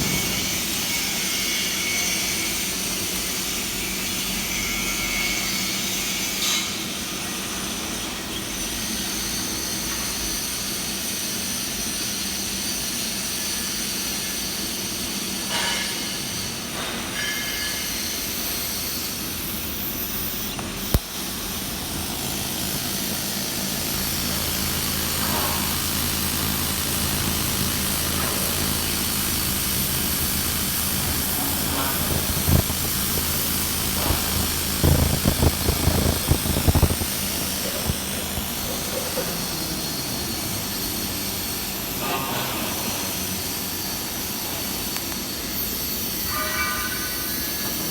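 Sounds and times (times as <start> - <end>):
machinery hiss: 13.2 - 47.9
low hum: 23.4 - 39.0.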